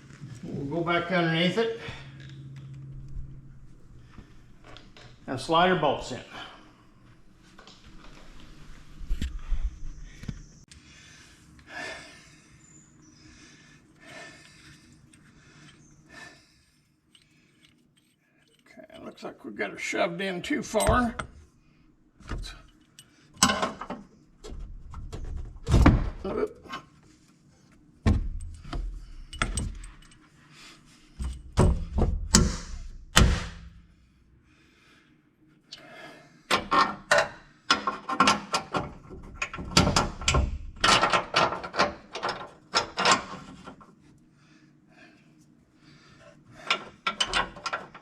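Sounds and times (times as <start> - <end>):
bolts clicking and rattling: 22.2 - 25.9, 28.1 - 30.3, 36.5 - 43.9, 46.6 - 48.0
metal clunks and thuds: 28.0 - 29.8.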